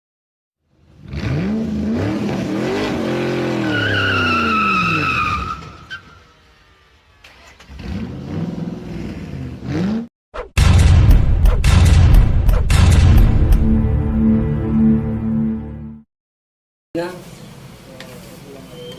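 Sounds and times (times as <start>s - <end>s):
car engine revving: 0.9s - 5.1s, 6.4s - 10.1s
tyre squeal: 3.6s - 6.3s, 18.7s - 18.9s.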